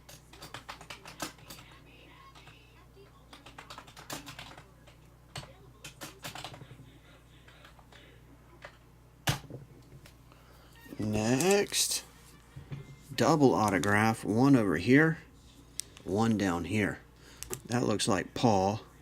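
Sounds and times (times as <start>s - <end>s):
computer keyboard typing: 0.0s - 6.6s.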